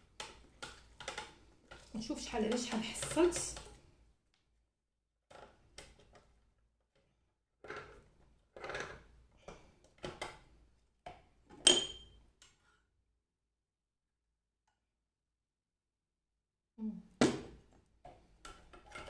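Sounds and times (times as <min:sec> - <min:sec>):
kitchenware clink and ring: 0:11.6 - 0:12.2.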